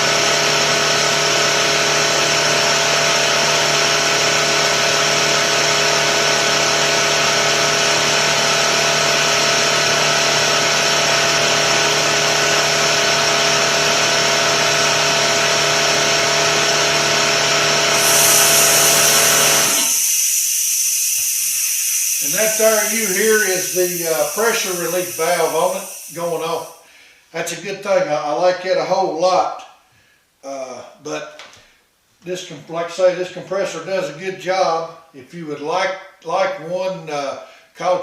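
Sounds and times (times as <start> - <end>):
air compressor running: 0.0 - 27.1
relief valve hissing: 17.9 - 27.0.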